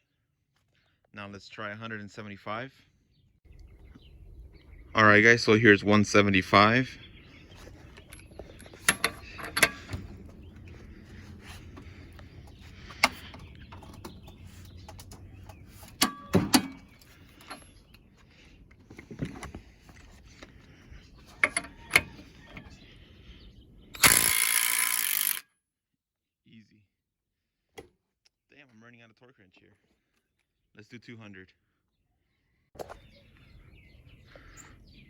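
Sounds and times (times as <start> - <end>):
tools clicking and knocking: 7.7 - 10.4, 11.7 - 18.1, 21.2 - 22.7, 24.0 - 25.4
impact wrench hammering: 24.0 - 25.4.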